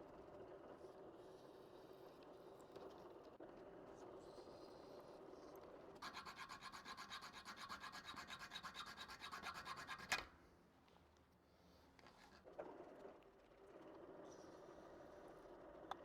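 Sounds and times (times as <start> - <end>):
hand tool rasping on metal: 6.0 - 10.2.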